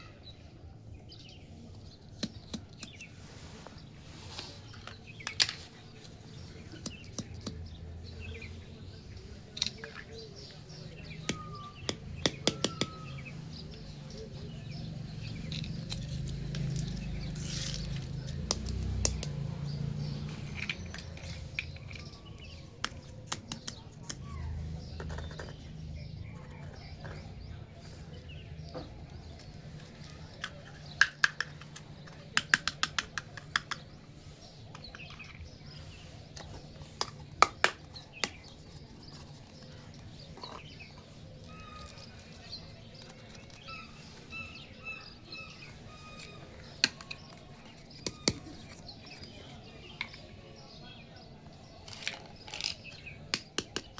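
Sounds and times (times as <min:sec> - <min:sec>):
plastic toy pieces clicking: 0:30.8 - 0:33.9.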